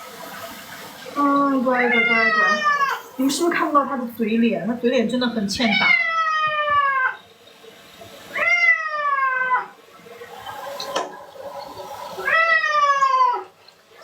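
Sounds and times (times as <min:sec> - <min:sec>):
cat meowing: 0:01.8 - 0:03.1, 0:05.7 - 0:07.2, 0:08.3 - 0:09.8, 0:12.2 - 0:13.5.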